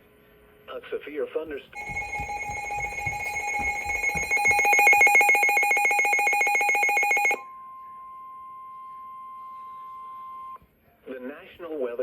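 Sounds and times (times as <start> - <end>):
steady alarm tone: 1.8 - 7.4
warbling electronic alert tone: 1.8 - 7.4.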